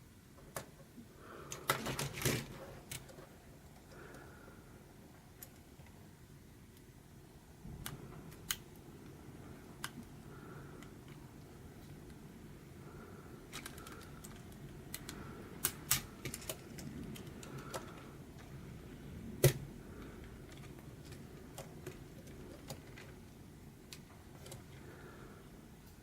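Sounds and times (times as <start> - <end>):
low steady hum: 0.0 - 26.0
plastic pieces snapping together: 13.5 - 18.0.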